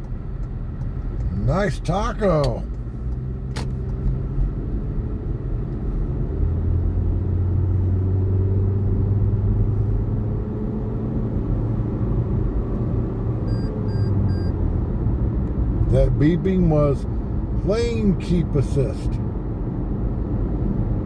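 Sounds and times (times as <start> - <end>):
car engine drone: 0.0 - 21.0
road noise inside car: 0.0 - 21.0
short high warning beeps: 13.4 - 14.6.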